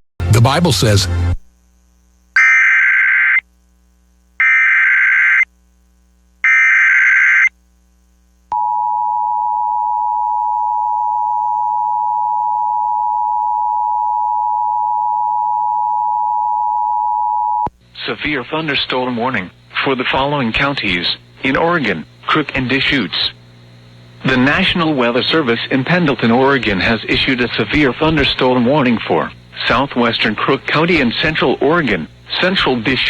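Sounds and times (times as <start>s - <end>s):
warbling digital screech: 2.4s - 3.4s.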